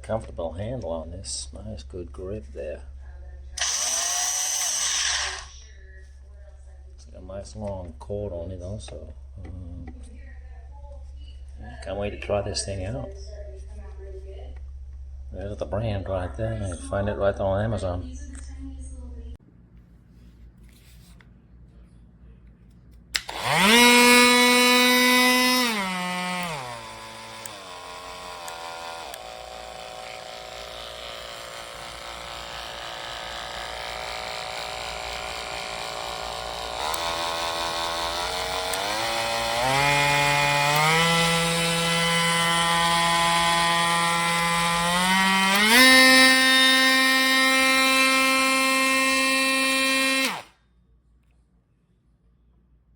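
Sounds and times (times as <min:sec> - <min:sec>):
multi-tool motor whining: 0:03.6 - 0:05.7, 0:23.2 - 0:50.5
power tool switch click: 0:23.2 - 0:23.6.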